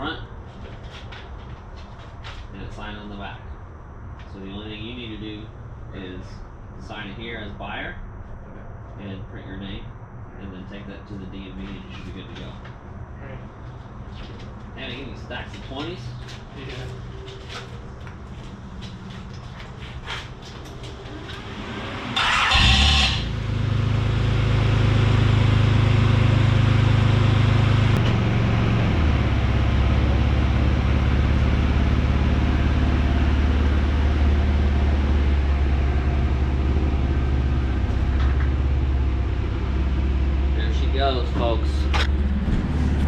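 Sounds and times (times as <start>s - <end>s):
car engine running: 13.6s - 43.0s
car engine cranking and starting: 20.4s - 43.0s.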